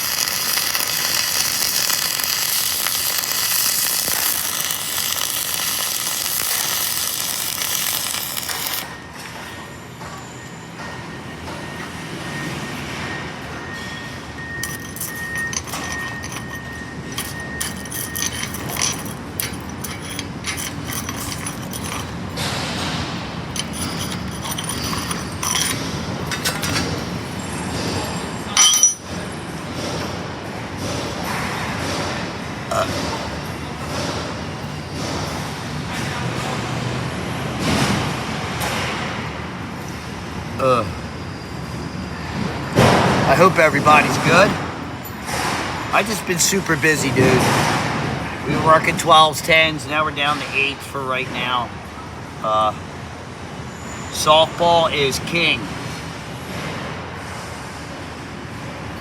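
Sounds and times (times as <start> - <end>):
welding arc crackling: 0.0 - 9.0, 14.6 - 27.3
clicks and metal clinks: 0.0 - 9.5, 14.5 - 27.2, 27.8 - 29.2.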